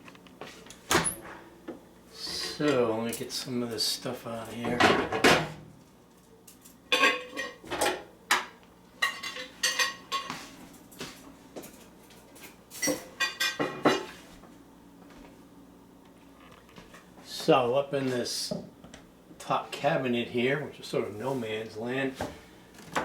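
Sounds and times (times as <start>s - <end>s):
dishes clinking and clattering: 6.6s - 10.4s, 11.6s - 14.2s.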